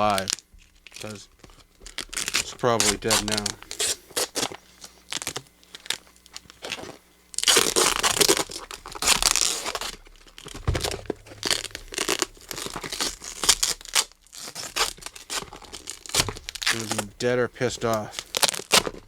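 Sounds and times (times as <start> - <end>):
packaging crinkling: 0.0 - 19.0
tape ripping off package: 0.0 - 19.0
dull bump: 10.6 - 13.6.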